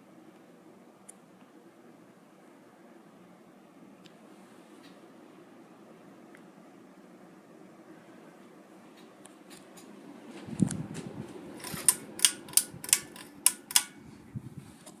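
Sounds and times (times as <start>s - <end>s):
ceiling fan humming: 0.0s - 15.0s
sharp clicks: 11.6s - 14.0s.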